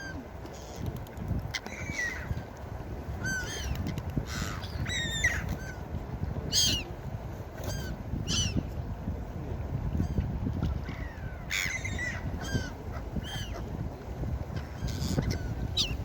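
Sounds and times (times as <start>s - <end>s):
wind or surf rushing: 0.0s - 16.0s
gulls calling: 1.5s - 2.5s, 3.2s - 5.8s, 10.0s - 13.8s, 14.5s - 16.0s.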